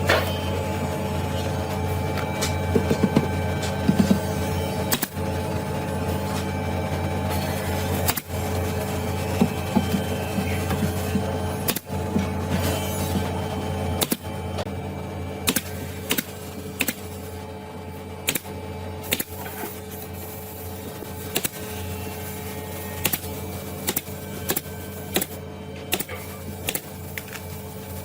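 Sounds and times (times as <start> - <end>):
steady low hum: 0.0 - 28.0
woodworking knocks and taps: 2.2 - 4.2.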